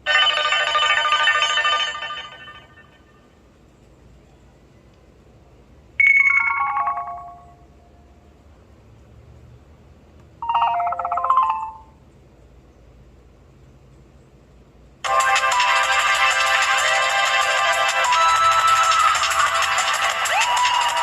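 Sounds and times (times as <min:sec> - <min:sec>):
phone ringtone chime notes: 0:00.1 - 0:02.9, 0:06.0 - 0:07.7, 0:10.4 - 0:12.0.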